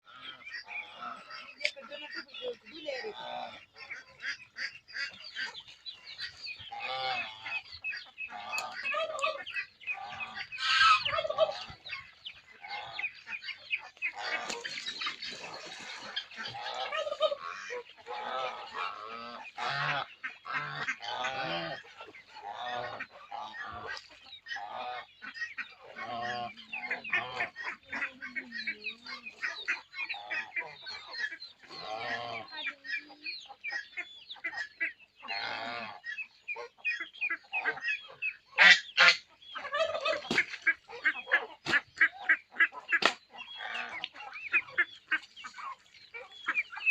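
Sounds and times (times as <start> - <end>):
flock of poultry calling: 0.0 - 46.9.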